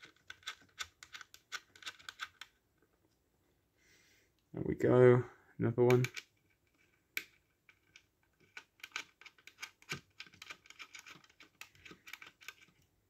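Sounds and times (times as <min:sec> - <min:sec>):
small clicks of screws being handled: 0:05.9 - 0:12.8.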